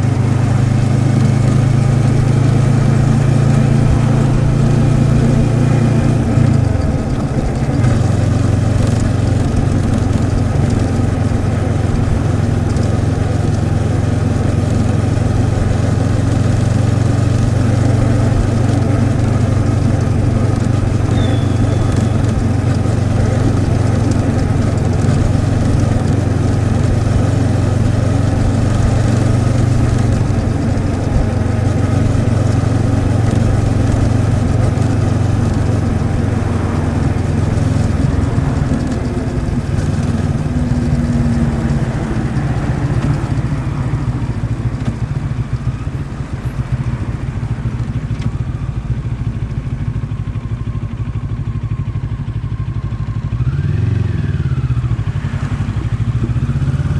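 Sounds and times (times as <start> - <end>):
motorcycle engine running: 0.0 - 56.9.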